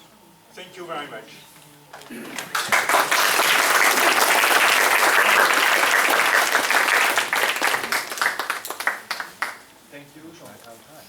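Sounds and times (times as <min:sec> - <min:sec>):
audience applauding: 0:02.0 - 0:09.7.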